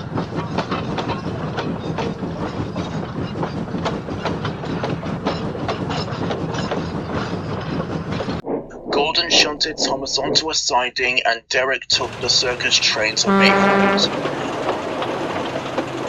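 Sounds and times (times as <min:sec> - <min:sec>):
wheels clicking over rail joints: 0:00.0 - 0:08.2, 0:14.1 - 0:16.0
train rumbling along track: 0:00.0 - 0:10.9, 0:11.9 - 0:16.0.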